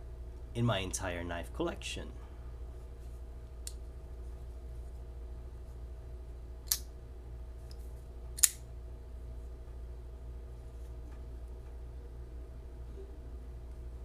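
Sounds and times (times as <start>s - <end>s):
knife blade snapping open: 8.4s - 8.6s.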